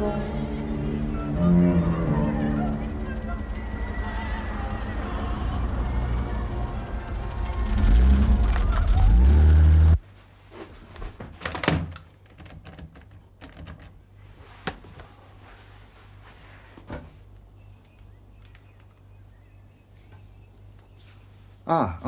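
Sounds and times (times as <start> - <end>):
loud low rising sound: 0.0 - 10.0.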